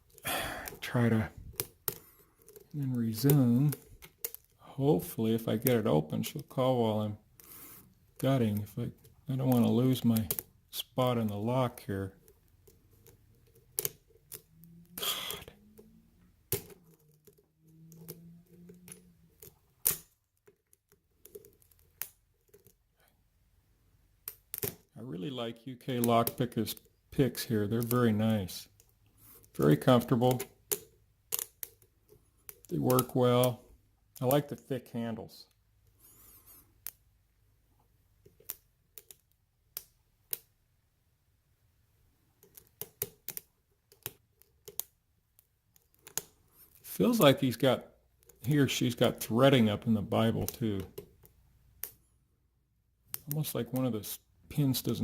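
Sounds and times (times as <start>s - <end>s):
lock picks clicking in a lock: 1.5s - 4.6s, 12.6s - 15.9s, 16.5s - 22.8s, 27.8s - 34.6s, 42.4s - 46.8s
lock pick clicking in lock: 16.5s - 22.7s, 30.3s - 31.9s, 42.4s - 46.3s.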